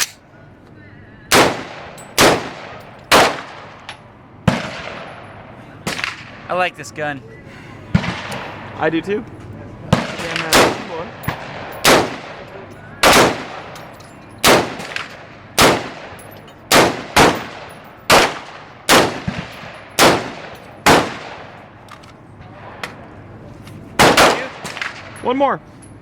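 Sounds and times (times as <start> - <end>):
rifle shots with ringing echo: 1.3 - 6.5, 9.9 - 23.1, 24.0 - 25.2.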